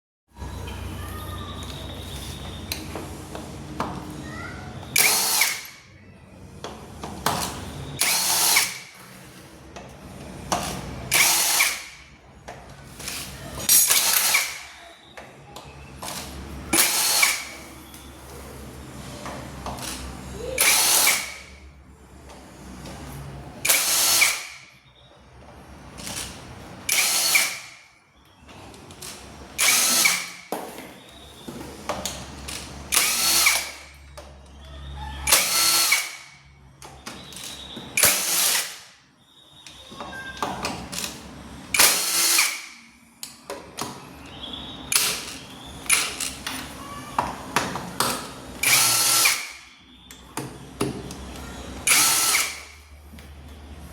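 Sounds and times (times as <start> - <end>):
power drill spinning: 4.9 - 5.8, 7.7 - 9.6, 11.1 - 12.0, 12.9 - 14.7, 16.0 - 19.2, 19.8 - 21.5, 23.6 - 24.6, 26.1 - 27.8, 29.0 - 30.5, 32.4 - 33.9, 35.3 - 36.3, 37.2 - 38.8, 41.0 - 42.7, 48.6 - 49.7, 51.2 - 52.8.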